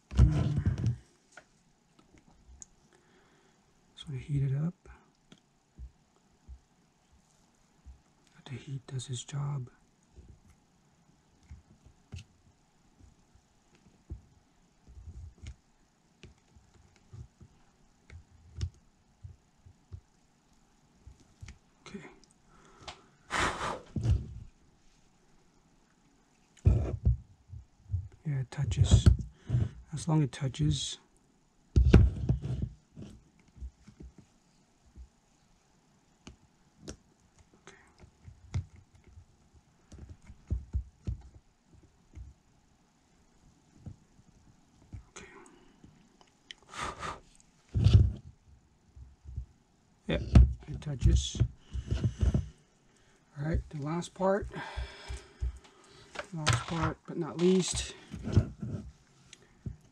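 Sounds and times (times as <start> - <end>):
faint clicks and knocks of handling: 0.0 - 3.0, 4.8 - 8.5, 9.3 - 10.6, 11.3 - 23.1, 31.1 - 42.4, 43.3 - 46.7, 50.2 - 59.9.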